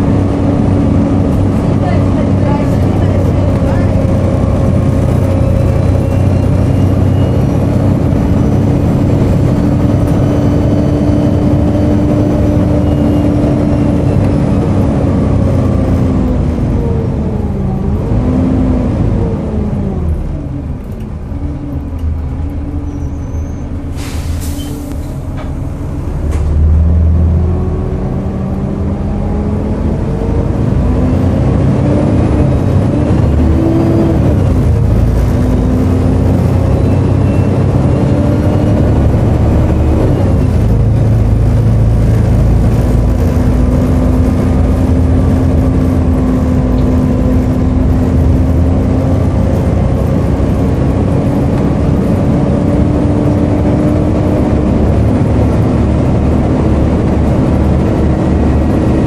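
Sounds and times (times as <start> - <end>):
bus engine accelerating: 0.0 - 59.0
air brake hiss: 23.9 - 25.2.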